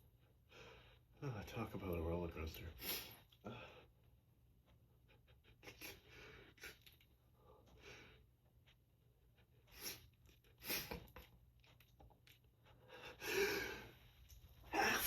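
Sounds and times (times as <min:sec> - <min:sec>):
sniffs and breaths: 0:02.7 - 0:04.2, 0:04.9 - 0:08.5, 0:09.2 - 0:11.3, 0:12.6 - 0:15.0
person sneezing: 0:14.7 - 0:15.0.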